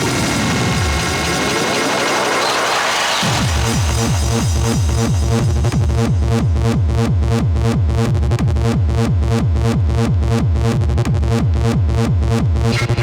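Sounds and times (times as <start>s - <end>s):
techno dance music: 0.0s - 6.3s, 12.0s - 13.0s.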